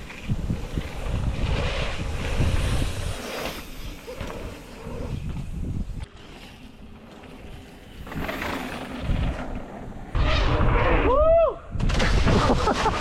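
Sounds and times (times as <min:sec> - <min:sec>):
wind buffeting microphone: 0:00.0 - 0:06.1.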